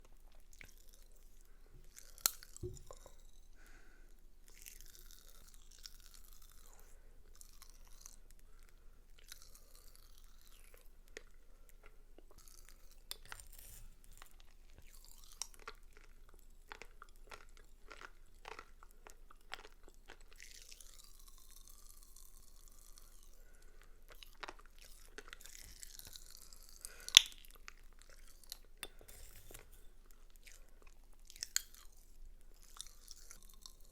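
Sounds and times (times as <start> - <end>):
soft chewing and mouth sounds: 0.0 - 33.9
candy popping and crackling: 12.4 - 15.9, 24.2 - 30.4.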